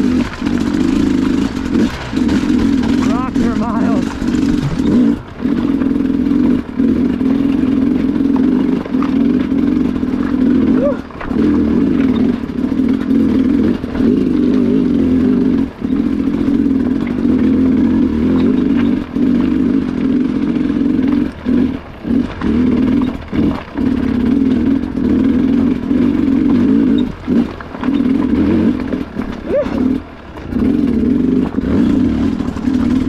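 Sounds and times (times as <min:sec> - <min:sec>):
dirt bike engine revving: 0:00.0 - 0:33.0.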